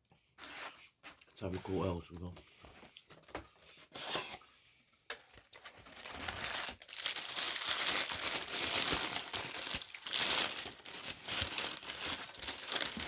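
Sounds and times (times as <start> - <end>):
food packaging crinkling: 5.4 - 13.0.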